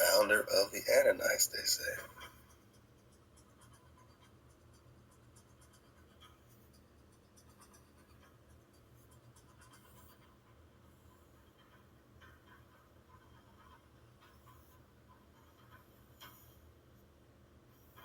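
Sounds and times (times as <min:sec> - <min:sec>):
steady low hum: 0:00.0 - 0:02.1.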